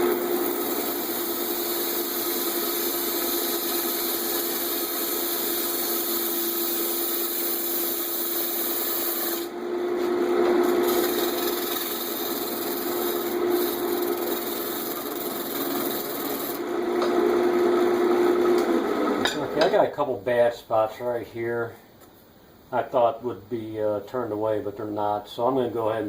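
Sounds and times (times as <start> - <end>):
gouge scraping spinning wood: 0.0 - 9.5, 10.4 - 17.2
wood lathe humming: 0.0 - 19.6.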